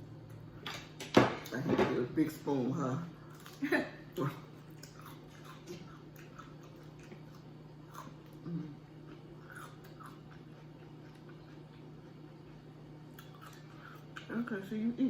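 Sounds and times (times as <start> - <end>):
steady low hum: 0.0 - 15.0
person chewing food: 4.4 - 14.3.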